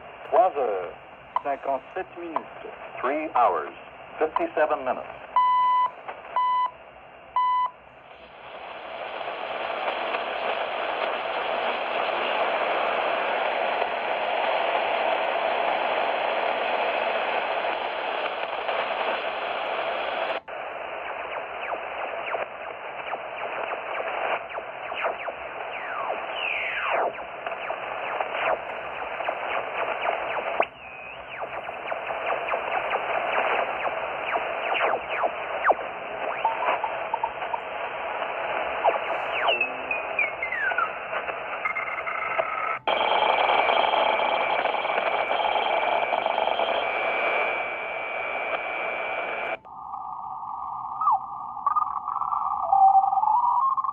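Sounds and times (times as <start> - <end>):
radio static and hiss: 0.0 - 6.7, 7.4 - 53.9
time signal beeps: 5.4 - 6.8, 7.4 - 7.8, 36.2 - 37.8
radio whistles gliding down: 18.6 - 53.9.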